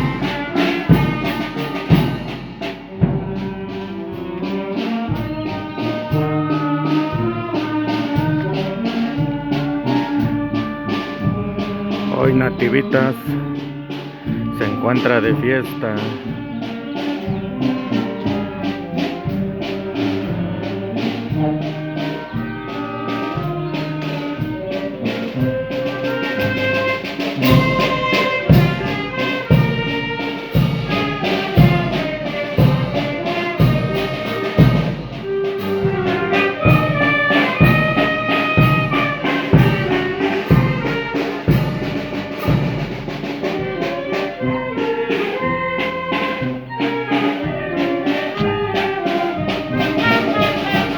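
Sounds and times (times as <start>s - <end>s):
steady drum beat: 0.0s - 50.9s
trumpets and trombones playing: 0.0s - 50.9s.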